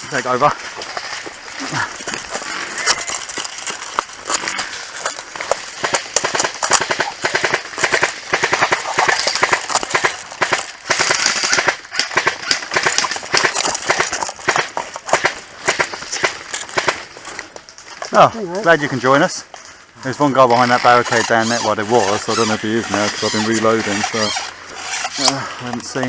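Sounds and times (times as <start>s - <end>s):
airsoft rifle rapid fire: 5.8s - 17.1s.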